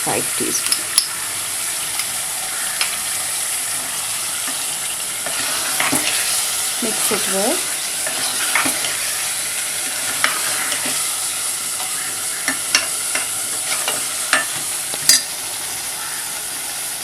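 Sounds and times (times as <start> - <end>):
spices sizzling in a pan: 0.0 - 17.0
spoon scraping a pan: 3.7 - 15.3.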